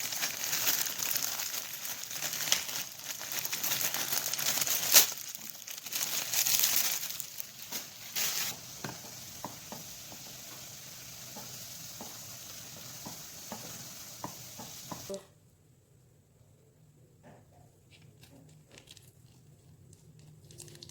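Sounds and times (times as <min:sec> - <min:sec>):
food sizzling in frying pan: 0:00.0 - 0:15.2
stirring scraping in pan: 0:08.0 - 0:15.1.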